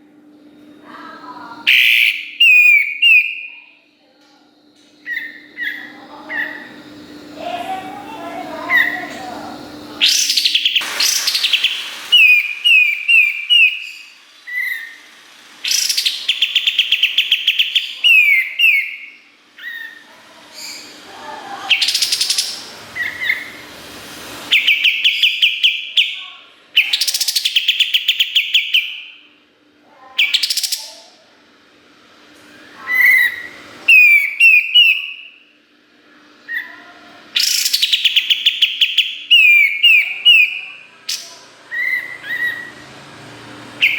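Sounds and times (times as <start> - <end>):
bird singing trills and whistles: 1.6 - 3.6, 5.0 - 6.8, 10.0 - 21.0, 21.7 - 23.6, 24.5 - 26.2, 26.8 - 29.2, 30.2 - 31.0, 32.7 - 35.4, 37.4 - 42.8.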